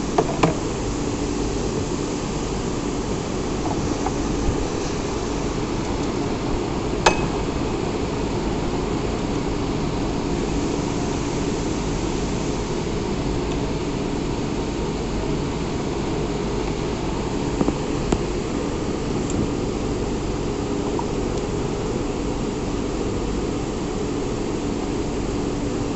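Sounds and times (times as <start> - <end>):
machinery humming: 0.0 - 25.9
faint held tone: 7.0 - 7.5.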